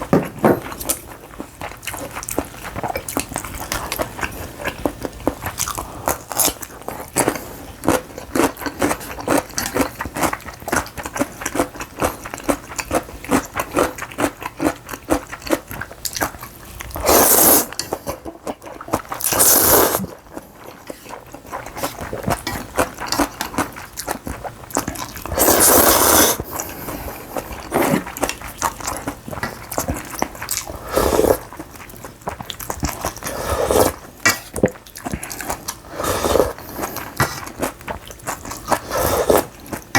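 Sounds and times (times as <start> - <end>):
chewing and crunching: 0.6 - 39.9
loud noisy eating sounds: 0.8 - 39.9.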